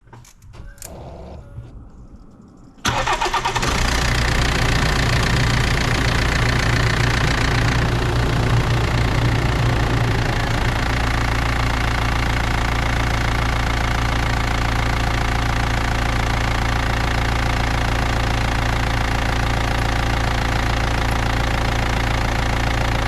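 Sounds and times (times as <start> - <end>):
diesel engine cranking and idling: 0.5 - 23.0.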